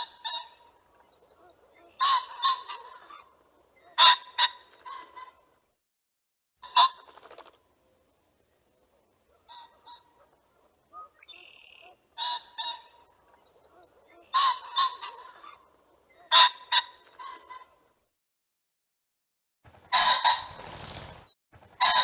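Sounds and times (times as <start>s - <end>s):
pheasant calling: 0.0s - 5.5s, 9.3s - 17.8s.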